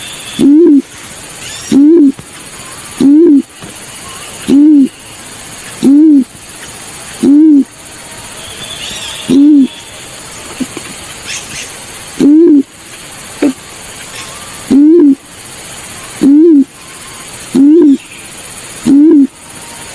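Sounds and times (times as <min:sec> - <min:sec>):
low bird hoots: 0:00.3 - 0:00.9, 0:01.6 - 0:02.2, 0:02.9 - 0:05.0, 0:05.8 - 0:06.3, 0:07.2 - 0:07.7, 0:09.2 - 0:09.9, 0:12.2 - 0:12.7, 0:13.4 - 0:13.6, 0:14.2 - 0:15.2, 0:16.2 - 0:18.1, 0:18.8 - 0:19.4.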